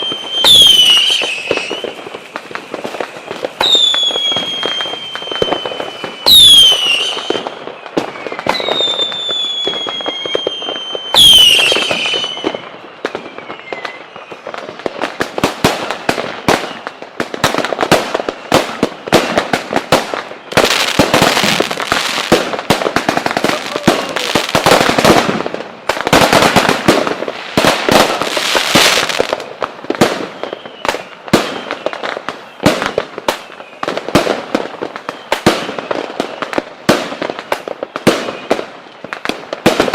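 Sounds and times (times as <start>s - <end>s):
firework whistle falling in pitch: 0.0s - 14.6s, 30.2s - 33.9s
crackle of rapid firework pops: 0.0s - 39.9s
firework bursts: 0.0s - 39.9s.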